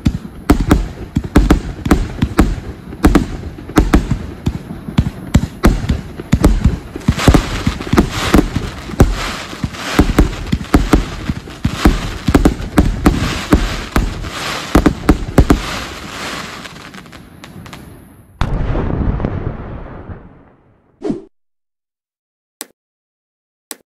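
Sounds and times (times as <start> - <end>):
fireworks cake firing: 0.0 - 20.2.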